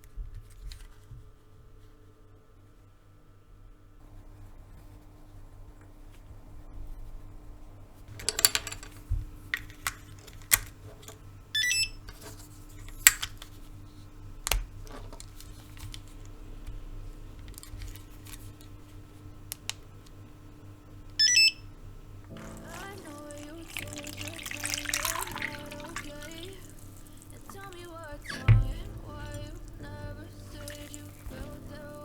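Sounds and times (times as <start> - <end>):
key fob electronic beep: 11.6 - 12.0, 21.2 - 21.6.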